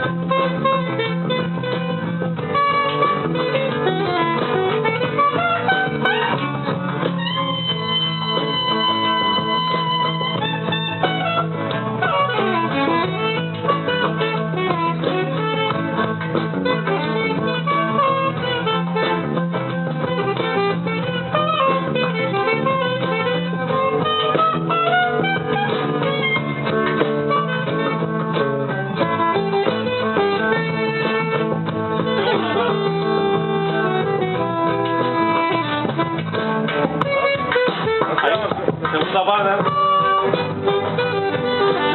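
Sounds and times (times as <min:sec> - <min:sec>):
band playing: 0:00.0 - 0:41.9
guitar with bent gliding notes: 0:00.0 - 0:41.9.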